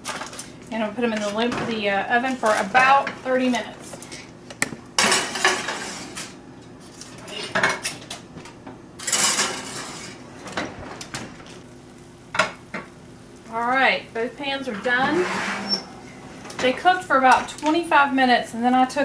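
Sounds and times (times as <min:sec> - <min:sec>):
metal scraping: 0:14.4 - 0:17.0
baking dishes and metal clinking: 0:14.5 - 0:17.8.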